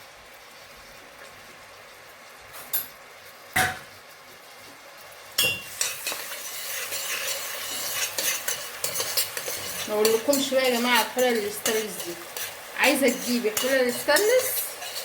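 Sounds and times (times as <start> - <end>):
onion sizzling in oil: 0.0 - 15.0
spoon scraping pot: 5.4 - 15.0.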